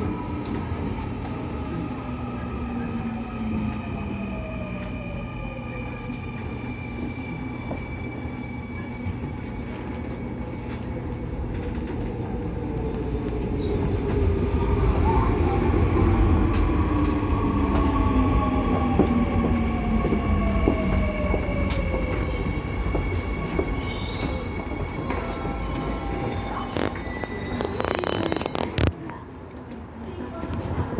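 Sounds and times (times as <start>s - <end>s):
train wheels rumbling on rail: 0.0s - 30.9s
wheel squeal: 23.8s - 28.8s.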